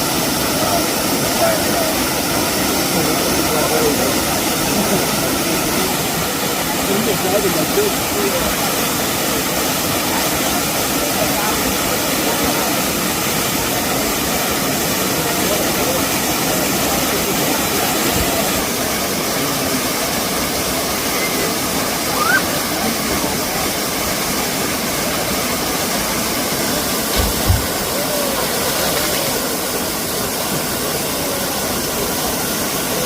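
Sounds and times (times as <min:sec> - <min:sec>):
waterfall rushing: 0:00.0 - 0:33.0
low thumps: 0:27.1 - 0:28.0.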